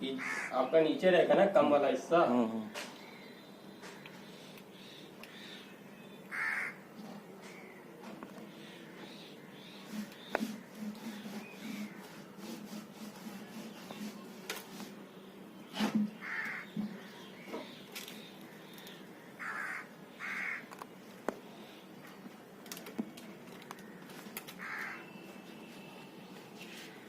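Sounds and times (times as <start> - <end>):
bird harsh call: 0.1 - 0.8, 2.6 - 6.8, 8.5 - 14.2, 15.6 - 20.7, 23.8 - 26.0.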